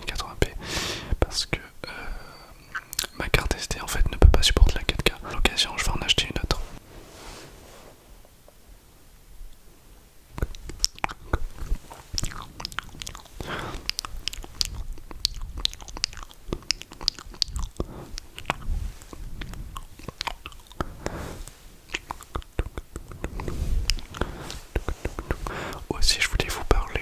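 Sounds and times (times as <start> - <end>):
breathing: 0.6 - 1.2, 1.8 - 2.6, 13.4 - 13.9, 17.8 - 19.9, 20.8 - 21.8, 23.2 - 25.9
lip and tongue clicks: 2.7 - 3.3, 10.3 - 27.0.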